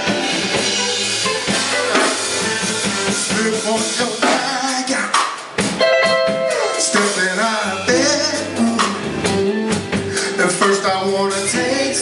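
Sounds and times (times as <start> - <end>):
live soul band playing: 0.0 - 12.0
person singing: 2.8 - 5.3, 6.1 - 12.0.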